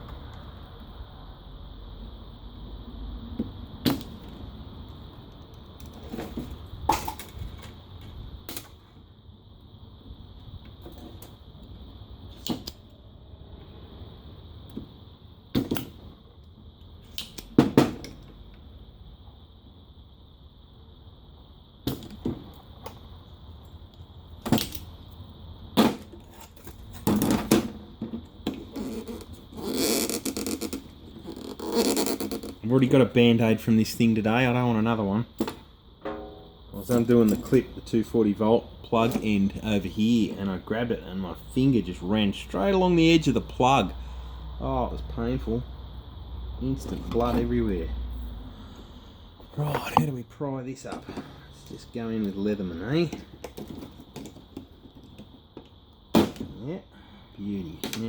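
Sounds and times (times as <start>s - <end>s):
faint high whine: 27.6s - 53.2s.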